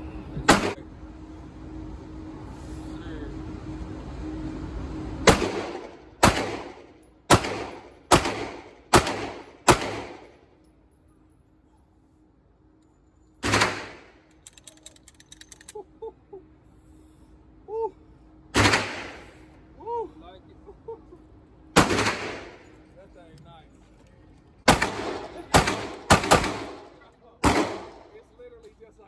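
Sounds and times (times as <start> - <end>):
gunshots with echo: 0.5 - 0.8, 5.3 - 10.3, 18.6 - 19.3, 21.8 - 22.6, 24.7 - 28.1.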